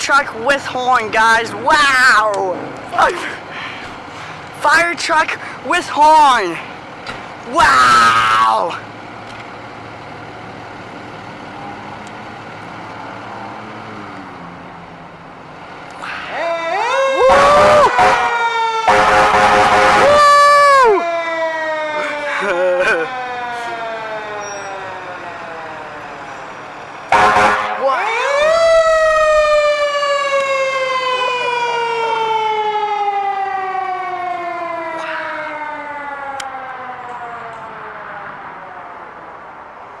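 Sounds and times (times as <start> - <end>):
fire engine idling: 0.2 - 7.6, 8.5 - 13.0, 14.4 - 39.3
mechanical siren wailing: 16.2 - 39.2.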